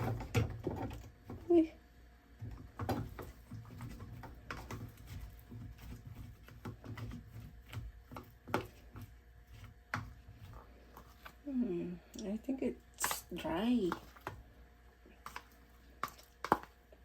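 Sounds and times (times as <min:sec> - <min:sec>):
low steady hum: 0:00.0 - 0:17.0
small objects clicking and tapping: 0:15.2 - 0:16.8.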